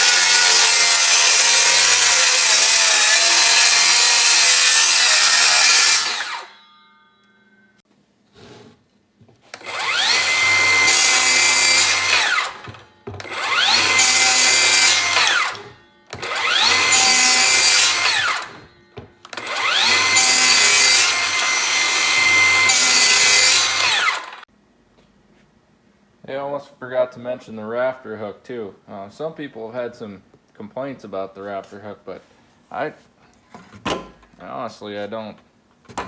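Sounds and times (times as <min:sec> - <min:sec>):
circular saw cutting wood: 0:00.0 - 0:06.6, 0:09.6 - 0:24.4.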